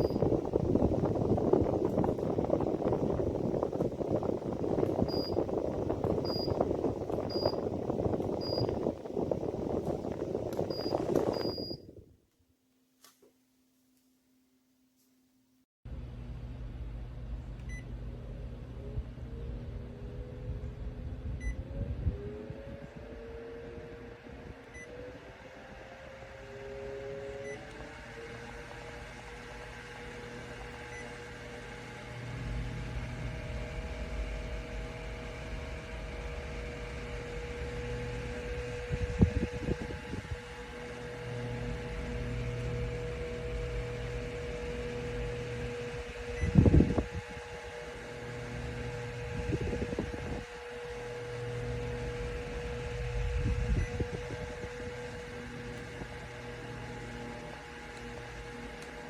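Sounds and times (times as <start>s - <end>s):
fan motor whine: 0.0s - 12.2s, 15.9s - 59.0s.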